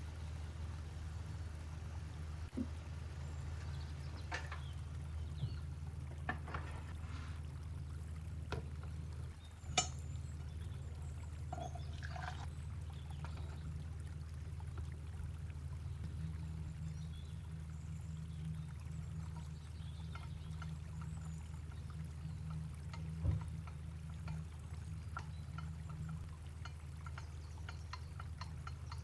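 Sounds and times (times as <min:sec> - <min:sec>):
steady low hum: 0:00.0 - 0:29.0
liquid being poured: 0:11.2 - 0:13.8.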